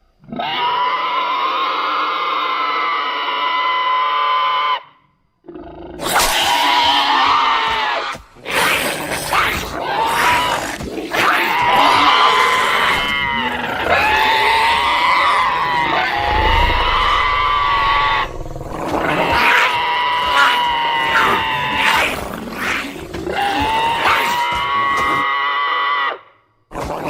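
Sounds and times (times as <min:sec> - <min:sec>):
creature calls: 0:05.9 - 0:27.0
low rumble: 0:14.4 - 0:19.5.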